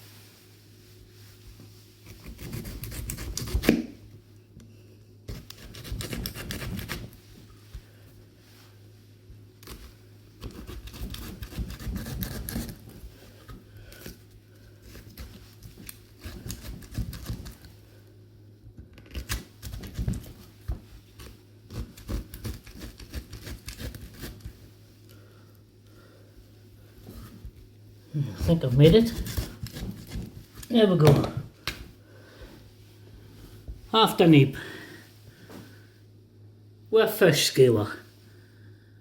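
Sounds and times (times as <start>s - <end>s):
knife scraping raw vegetable: 2.0s - 4.0s, 5.3s - 7.2s, 9.6s - 17.7s, 21.2s - 24.6s, 28.2s - 31.3s.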